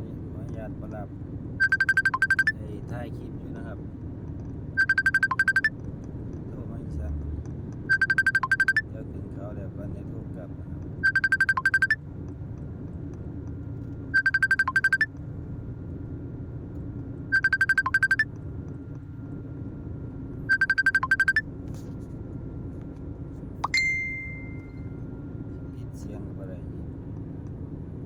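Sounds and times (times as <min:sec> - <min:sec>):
truck engine rumble: 0:00.0 - 0:28.0
phone ringing electronic trill: 0:01.6 - 0:02.5, 0:04.8 - 0:05.7, 0:07.9 - 0:08.8, 0:11.0 - 0:12.0, 0:14.2 - 0:15.1, 0:17.3 - 0:18.2, 0:20.5 - 0:21.4.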